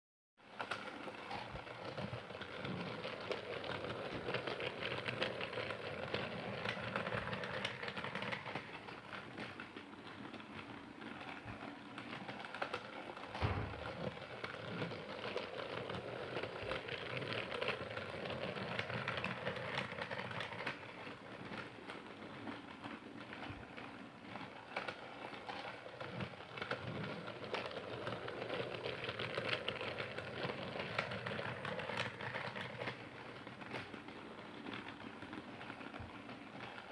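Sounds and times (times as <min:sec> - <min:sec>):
toy train clattering on track: 0:00.5 - 0:36.9.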